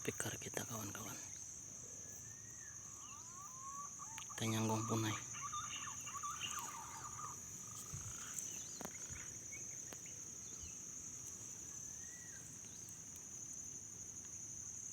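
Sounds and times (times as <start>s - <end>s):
high-pitched insect drone: 0.0s - 13.8s
faint whistled bird calls: 1.9s - 10.8s, 12.0s - 12.9s.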